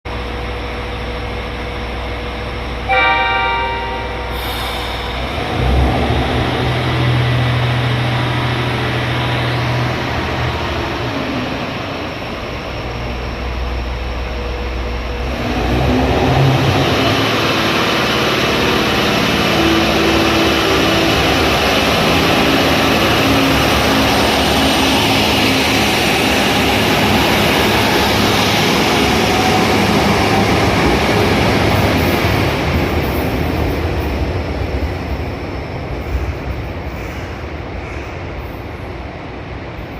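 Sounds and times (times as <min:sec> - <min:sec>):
railcar engine running up: 0:00.1 - 0:39.9
train wheel and running noise: 0:00.1 - 0:39.9
train horn: 0:02.9 - 0:04.6.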